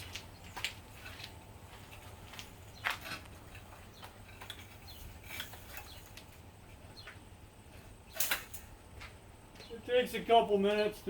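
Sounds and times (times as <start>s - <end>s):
braided hose sleeve scraping: 4.3s - 6.3s.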